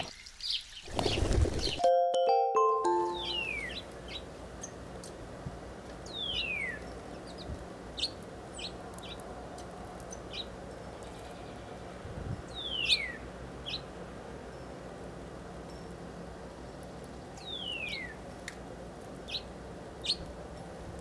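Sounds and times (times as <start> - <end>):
high bird chirps: 2.9 - 4.2.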